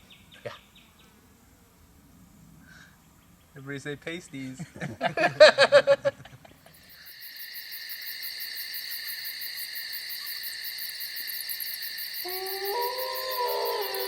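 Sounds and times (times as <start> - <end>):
insects trilling: 6.5 - 14.0.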